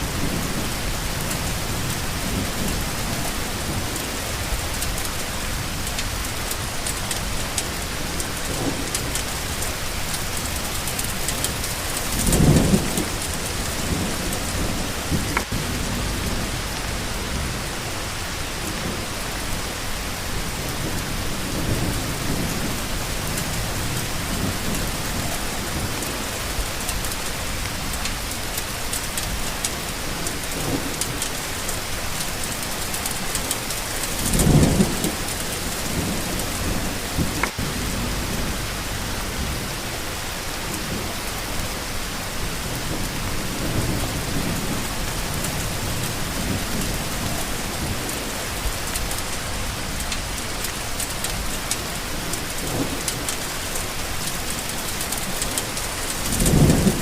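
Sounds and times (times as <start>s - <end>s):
steady rain falling: 0.0s - 57.0s
low rumbles: 11.7s - 19.4s, 34.4s - 40.5s.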